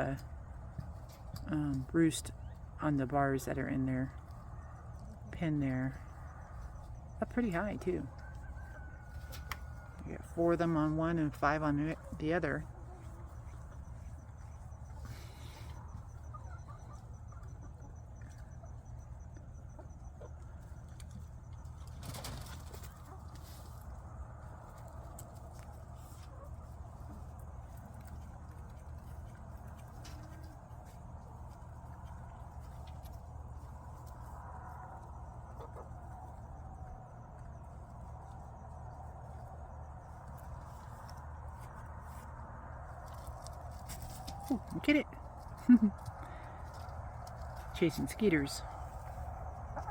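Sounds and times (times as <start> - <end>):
low hum: 0.0 - 49.9
low steady rumble: 0.0 - 49.9
chickens clucking softly: 12.0 - 42.2, 48.7 - 49.9.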